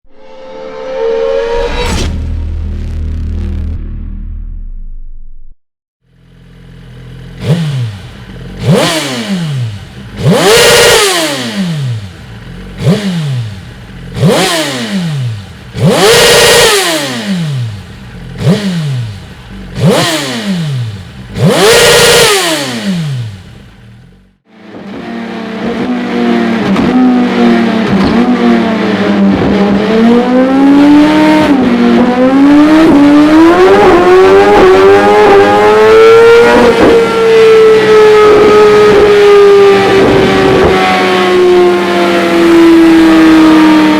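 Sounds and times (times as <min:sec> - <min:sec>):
motorcycle engine under load: 0:06.0 - 0:43.9
motorcycle throttle blips: 0:06.2 - 0:29.9.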